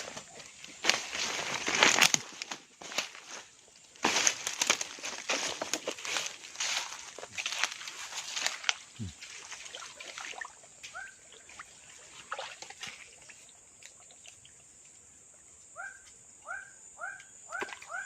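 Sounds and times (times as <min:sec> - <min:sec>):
rustling: 0:00.0 - 0:08.8.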